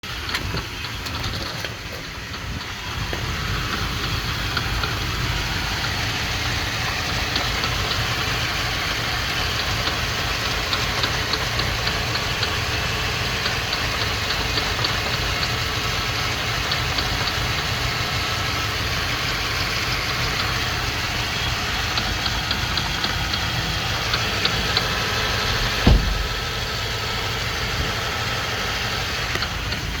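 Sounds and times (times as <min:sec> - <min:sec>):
pickup truck engine hum: 0:00.0 - 0:30.0
sharp thump: 0:25.5 - 0:26.6.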